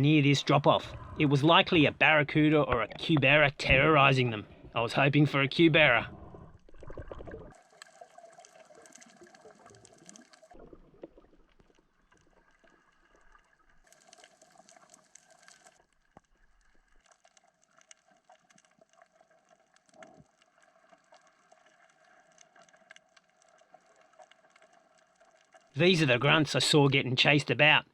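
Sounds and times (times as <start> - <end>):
underwater hiss with crackling clicks: 6.9 - 10.6, 13.8 - 25.8.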